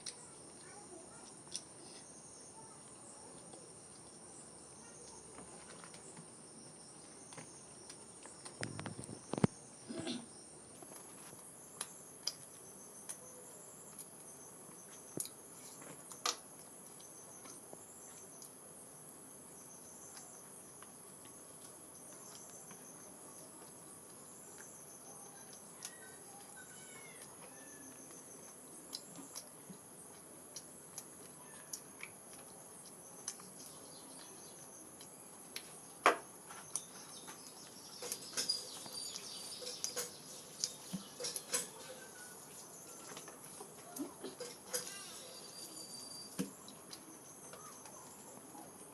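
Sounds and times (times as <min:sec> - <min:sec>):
clicks and smacks of eating: 0:00.0 - 0:01.9, 0:07.0 - 0:10.1, 0:10.8 - 0:17.6, 0:20.0 - 0:45.2, 0:46.4 - 0:48.2
high-pitched insect chirring: 0:44.6 - 0:46.4.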